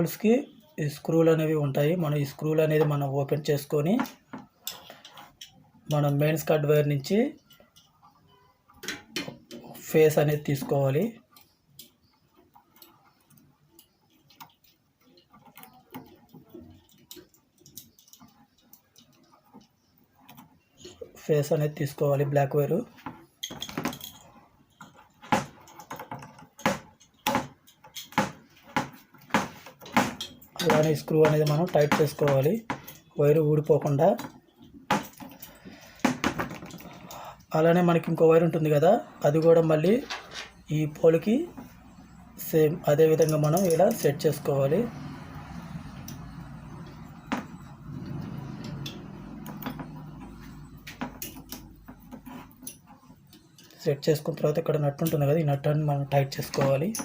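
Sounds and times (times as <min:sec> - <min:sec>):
metal parts and hand tool clicking: 0:01.7 - 0:57.0
wire and screw clicks: 0:11.2 - 0:21.1, 0:42.0 - 0:53.8.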